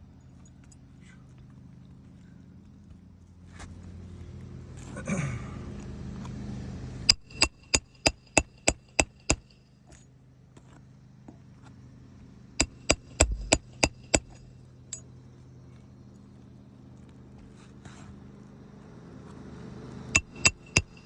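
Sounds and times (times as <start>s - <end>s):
hammer striking metal: 7.1s - 9.5s, 12.6s - 14.5s, 20.2s - 21.0s.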